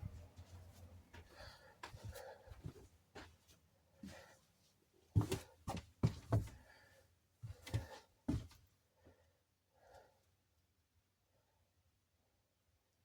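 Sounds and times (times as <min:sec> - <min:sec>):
soft handling thumps and knocks: 0:05.2 - 0:06.6.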